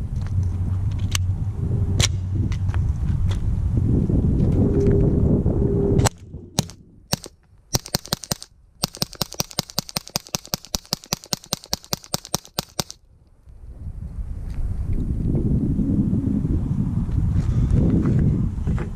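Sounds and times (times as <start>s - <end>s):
steady low rumble: 0.0s - 11.0s, 12.5s - 18.9s
suppressed gunshots: 6.0s - 13.0s.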